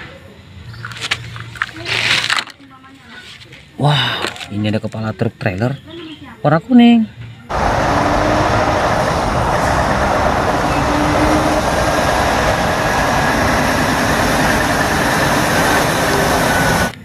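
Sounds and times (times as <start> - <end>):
truck engine running: 7.5 - 17.0.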